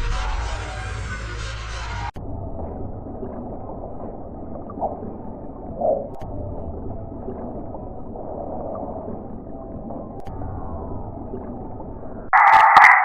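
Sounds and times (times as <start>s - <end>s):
muffled watery sound effect: 0.0s - 13.0s
call-like blips: 12.3s - 13.0s.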